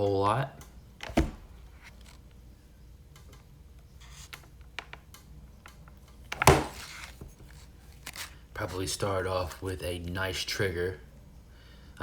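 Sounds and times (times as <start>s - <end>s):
handling clicks and rubs: 5.6s - 8.9s.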